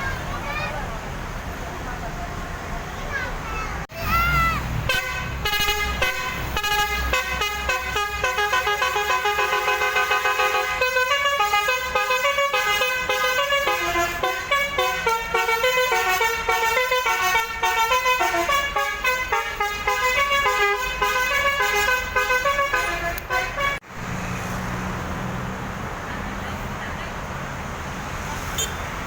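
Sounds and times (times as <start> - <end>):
air horn playing a tune: 4.8 - 23.8.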